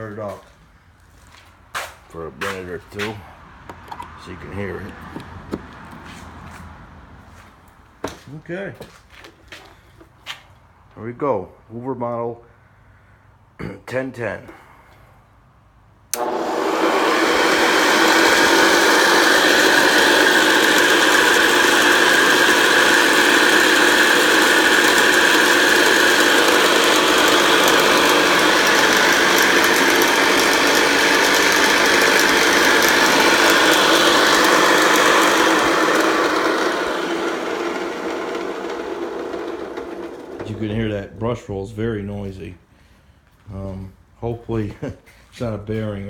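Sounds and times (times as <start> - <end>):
vacuum cleaner running: 16.1 - 40.9.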